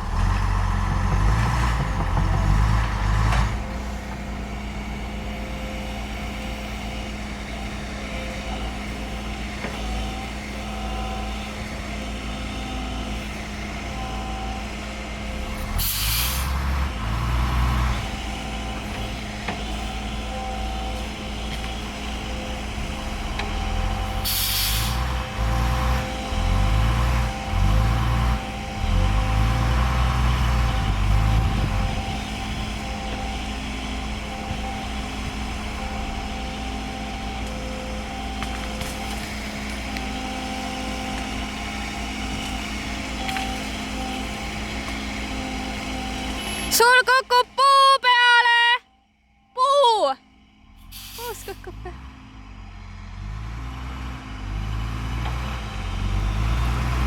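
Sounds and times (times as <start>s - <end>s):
heavy diesel machinery running: 0.0s - 57.0s
compressed air hissing: 24.2s - 25.0s.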